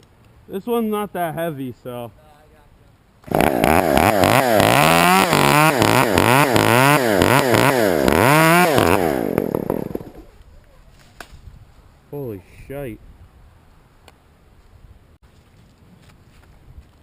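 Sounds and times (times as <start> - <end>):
chainsaw revving: 3.2 - 10.3.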